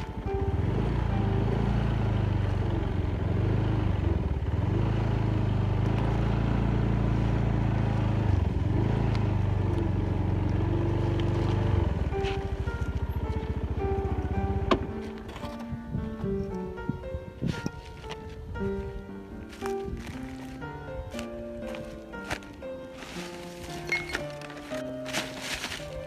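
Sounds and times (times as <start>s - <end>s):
vehicle engine running: 0.0s - 26.0s.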